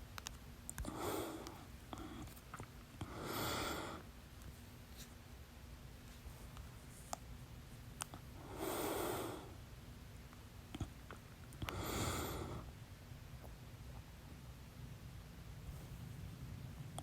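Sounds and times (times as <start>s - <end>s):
person breathing: 0.8s - 2.4s, 3.0s - 4.1s, 8.4s - 9.6s, 11.6s - 12.8s.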